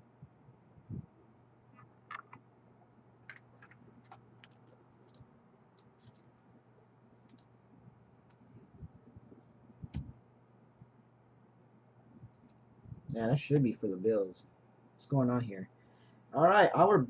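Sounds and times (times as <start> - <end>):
low steady hum: 0.0 - 17.0
trading cards being shuffled: 2.1 - 2.4, 3.3 - 6.4.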